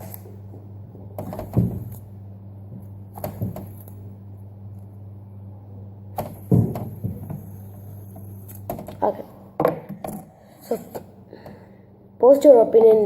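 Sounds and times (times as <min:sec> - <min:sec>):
steady low hum: 0:00.0 - 0:13.0
knocks of objects being handled: 0:00.5 - 0:02.0, 0:02.7 - 0:03.8, 0:06.2 - 0:10.3.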